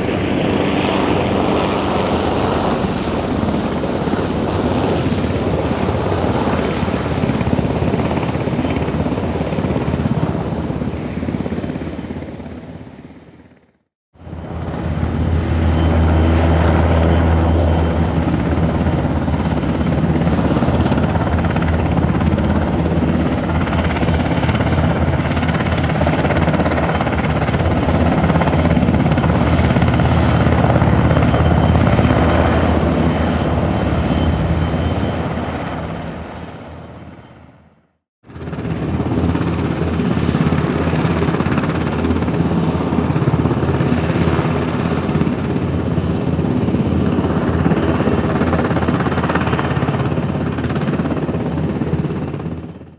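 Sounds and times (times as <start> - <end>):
helicopter running: 0.0 - 52.9
high steady whine: 14.3 - 20.0.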